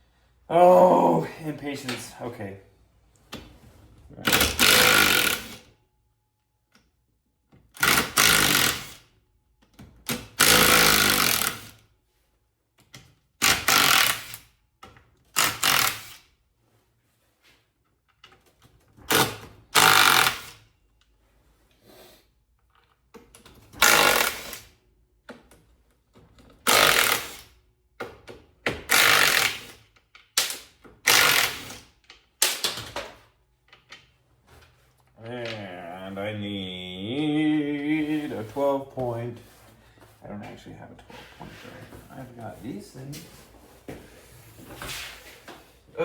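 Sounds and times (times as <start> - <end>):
impact wrench bursts: 4.3 - 5.6, 7.8 - 9.1, 10.3 - 11.7, 13.4 - 14.4, 15.4 - 16.2, 19.1 - 20.6, 23.8 - 24.7, 26.6 - 27.5, 28.8 - 29.8, 31.0 - 31.9.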